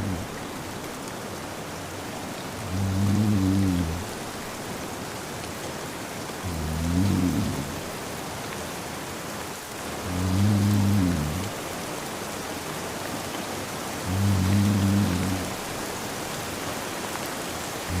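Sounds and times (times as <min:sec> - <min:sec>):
man snoring: 0:00.0 - 0:00.3, 0:02.6 - 0:04.2, 0:06.4 - 0:07.9, 0:10.0 - 0:11.5, 0:14.0 - 0:15.6
steady rain: 0:00.0 - 0:18.0.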